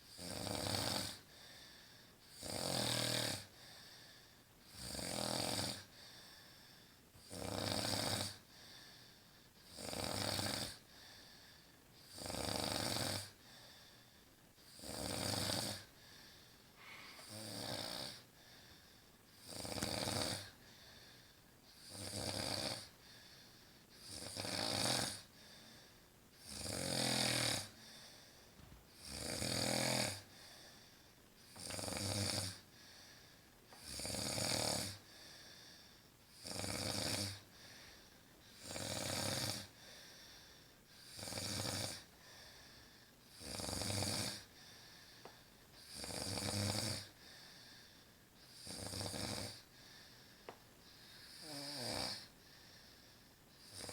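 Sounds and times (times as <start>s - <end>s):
woman snoring: 0.1s - 1.2s, 2.3s - 3.5s, 4.7s - 5.9s, 7.2s - 8.5s, 9.7s - 10.8s, 12.1s - 13.4s, 14.7s - 15.9s, 16.8s - 18.3s, 19.4s - 20.6s, 21.8s - 22.9s, 24.0s - 25.3s, 26.4s - 27.8s, 29.0s - 30.3s, 31.5s - 32.6s, 33.8s - 35.0s, 36.4s - 37.4s, 38.6s - 39.8s, 41.1s - 42.1s, 43.3s - 44.5s, 45.8s - 47.2s, 48.5s - 49.6s, 51.2s - 52.3s, 53.6s - 53.9s
quiet breathing: 1.1s - 2.5s, 3.3s - 4.8s, 5.8s - 7.3s, 8.3s - 53.9s.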